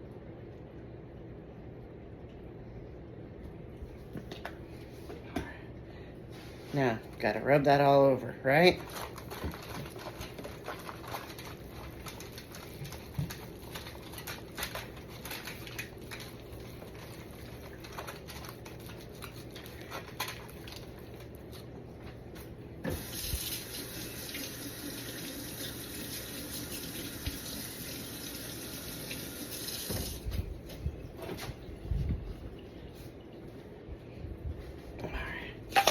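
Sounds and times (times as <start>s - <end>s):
kitchen tap running: 22.9s - 30.3s.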